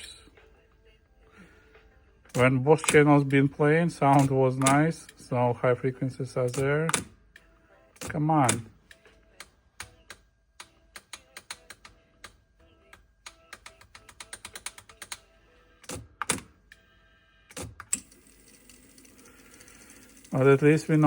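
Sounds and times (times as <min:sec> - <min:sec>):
cassette deck relays clicking: 0:02.4 - 0:05.1, 0:17.7 - 0:21.0.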